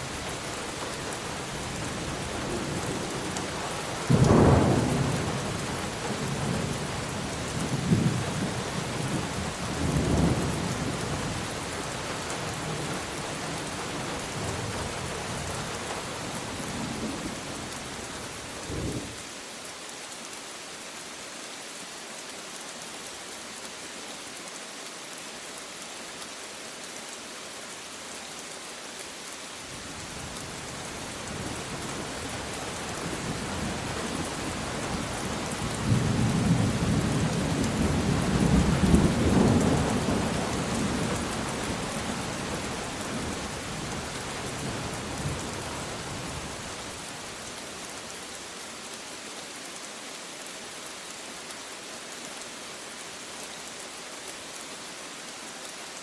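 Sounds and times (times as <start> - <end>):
steady rain: 0.0 - 56.0
rolling thunder: 4.1 - 6.8.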